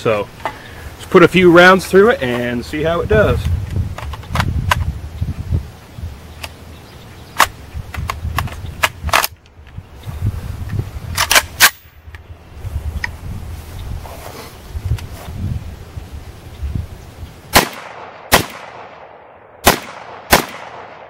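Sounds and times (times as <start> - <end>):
rifle shots: 17.5 - 21.0.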